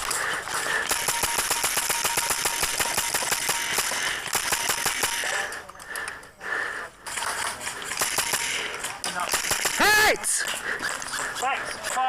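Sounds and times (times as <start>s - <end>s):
airsoft gun firing: 0.9s - 5.3s, 8.0s - 8.6s, 9.2s - 10.0s.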